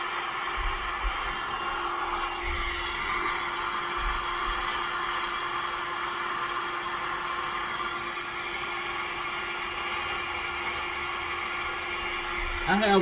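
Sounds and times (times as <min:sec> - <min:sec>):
hair dryer blowing: 0:00.0 - 0:13.0.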